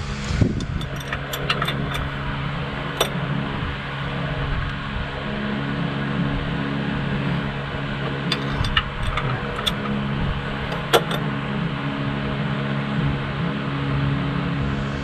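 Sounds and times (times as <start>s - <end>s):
steady low hum: 0.0s - 15.0s
pushrods tapping metal: 0.6s - 3.6s, 7.0s - 11.6s.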